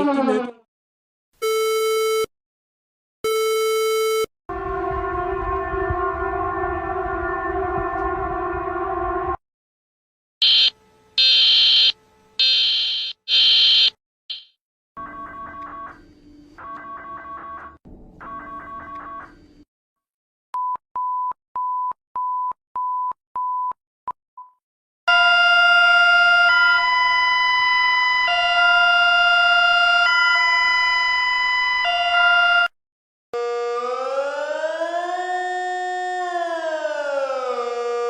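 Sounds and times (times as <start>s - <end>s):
siren-like wail: 0.0s - 0.6s, 4.5s - 9.4s, 25.1s - 32.7s, 33.4s - 38.0s.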